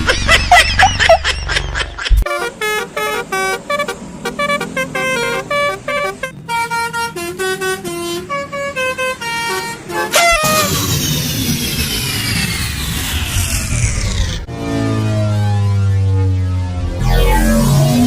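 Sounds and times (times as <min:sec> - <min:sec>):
multi-tone bus air horn tune: 0:02.2 - 0:10.9
warbling swooping tones: 0:10.4 - 0:14.5
low rumble: 0:10.5 - 0:14.6.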